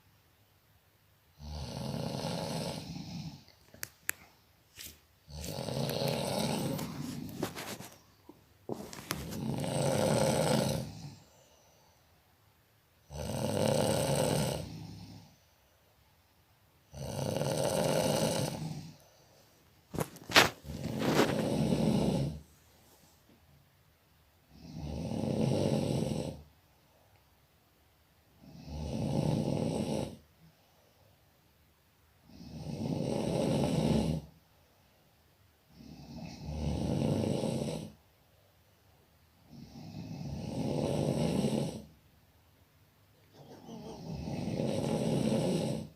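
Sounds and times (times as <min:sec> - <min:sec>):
person snoring deeply: 0:01.4 - 0:03.5, 0:05.3 - 0:07.7, 0:08.7 - 0:11.6, 0:13.1 - 0:15.3, 0:16.9 - 0:19.0, 0:20.0 - 0:22.5, 0:24.5 - 0:26.5, 0:28.4 - 0:30.2, 0:32.3 - 0:34.3, 0:35.8 - 0:38.0, 0:39.5 - 0:41.9, 0:43.6 - 0:45.9.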